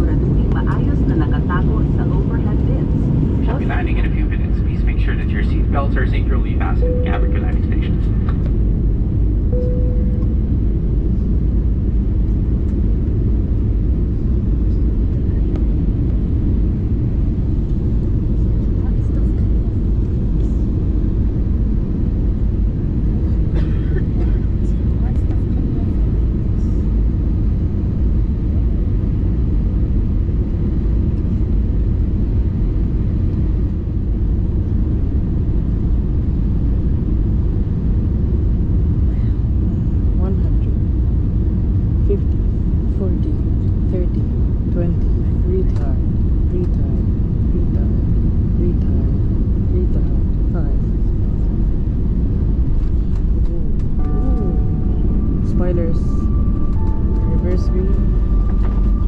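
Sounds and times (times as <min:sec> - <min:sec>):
airliner cabin rumble: 0:00.0 - 0:59.0
short tone: 0:06.8 - 0:08.1, 0:09.5 - 0:10.5, 0:54.0 - 0:59.0.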